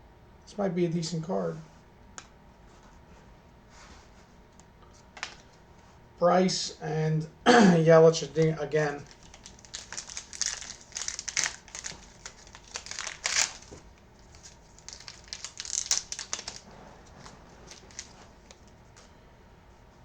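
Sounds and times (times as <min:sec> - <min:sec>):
plastic wrapper crinkling and tearing: 0:08.9 - 0:18.8.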